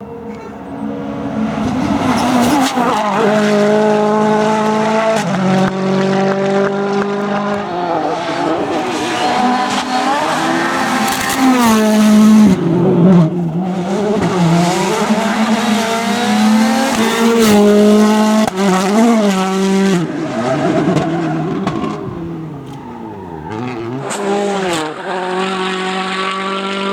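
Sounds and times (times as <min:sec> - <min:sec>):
tyres squealing: 0:00.0 - 0:04.7
rally car engine revving: 0:00.0 - 0:26.9.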